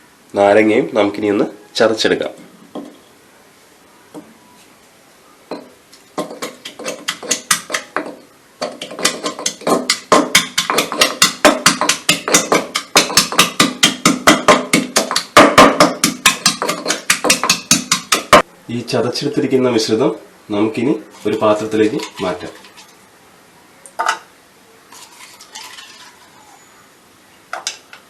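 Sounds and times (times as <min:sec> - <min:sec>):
pounding garlic and ginger: 0:05.5 - 0:18.4.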